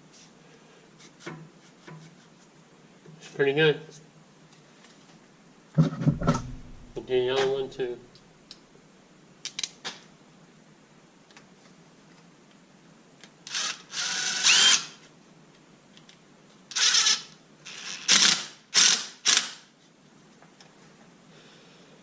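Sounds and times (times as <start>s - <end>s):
power drill running: 13.5s - 14.9s.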